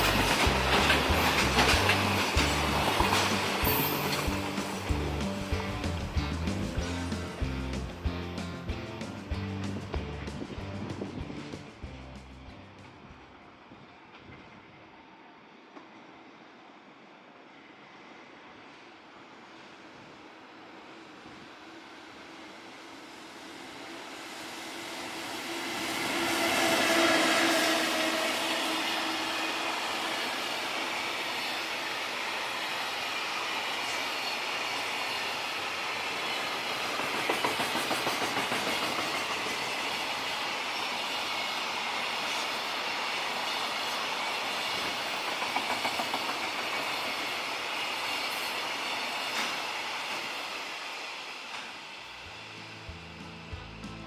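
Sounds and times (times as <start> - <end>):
wheels clacking over rail joints: 0.0 - 10.5, 36.8 - 39.7, 44.7 - 47.3
steady train tone: 0.0 - 11.9, 12.5 - 54.0
freight train passing: 0.0 - 54.0.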